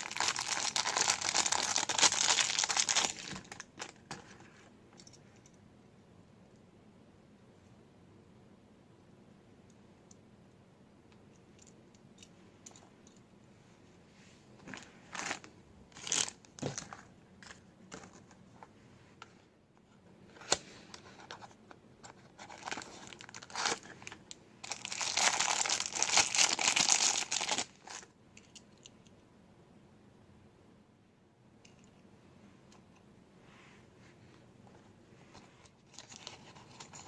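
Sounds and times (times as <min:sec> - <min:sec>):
packaging crinkling and tearing: 0:00.0 - 0:04.0, 0:15.2 - 0:17.0, 0:22.4 - 0:28.1.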